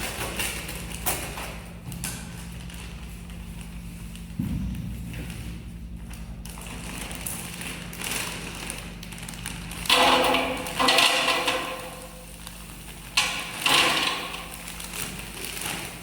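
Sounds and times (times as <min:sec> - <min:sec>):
fries clattering into basket: 0:09.8 - 0:12.2, 0:13.1 - 0:16.0.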